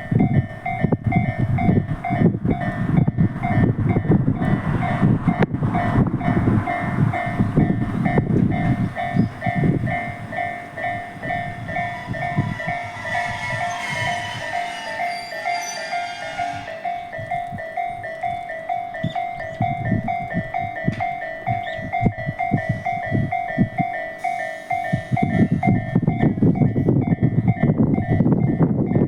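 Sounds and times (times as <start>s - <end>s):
train passing with wheel clatter: 0.0s - 29.0s
level crossing bell ringing: 8.1s - 26.3s.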